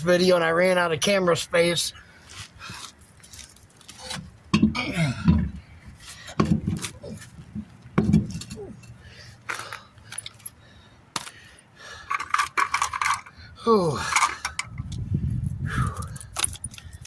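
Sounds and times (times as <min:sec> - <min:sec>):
metallic clicks and clinks: 0:10.1 - 0:10.6, 0:12.0 - 0:13.4.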